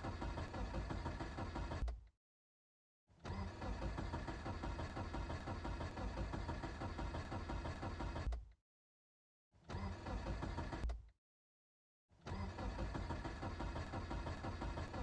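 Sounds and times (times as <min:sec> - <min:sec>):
car engine cranking: 0:00.0 - 0:02.0, 0:03.2 - 0:08.4, 0:09.6 - 0:11.0, 0:12.3 - 0:15.0.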